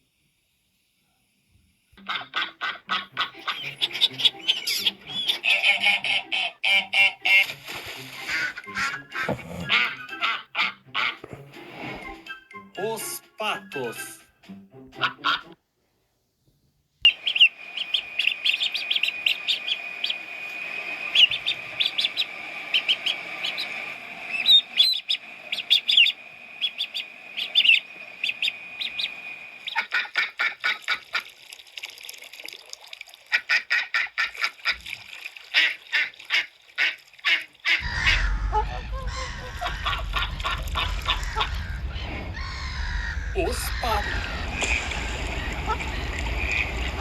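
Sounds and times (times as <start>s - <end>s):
ducks quacking: 2.0s - 11.4s, 15.0s - 15.6s, 17.1s - 31.3s, 33.3s - 34.9s, 35.5s - 47.0s
geese honking: 2.0s - 11.4s, 15.0s - 15.6s, 17.1s - 31.3s, 35.6s - 47.0s
low rumble: 37.8s - 47.0s
steady high-pitched tone: 37.8s - 47.0s.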